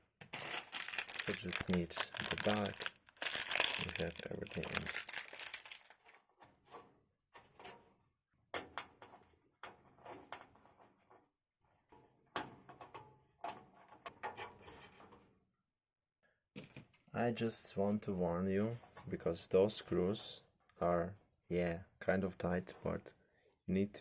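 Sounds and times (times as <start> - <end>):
metal parts clicking and scraping: 0.4 - 6.2.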